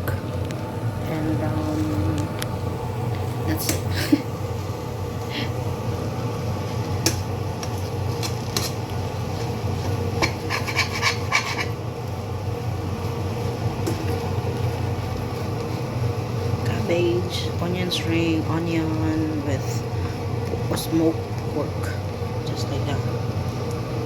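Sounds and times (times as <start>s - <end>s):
metal spatula scraping a pan: 9.4s - 11.8s.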